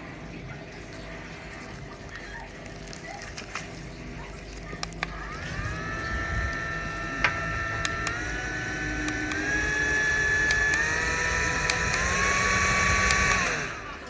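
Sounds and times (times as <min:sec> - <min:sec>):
handheld fan motor whine: 0:04.8 - 0:14.0
sharp clicks: 0:10.4 - 0:12.4, 0:13.0 - 0:13.7.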